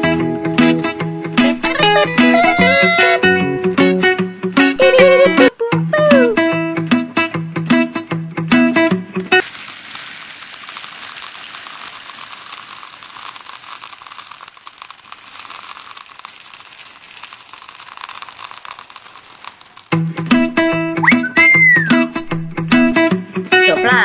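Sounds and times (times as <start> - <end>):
guitar music: 0.0 - 9.4, 20.1 - 24.0
foil wrapper crinkling: 9.2 - 20.6.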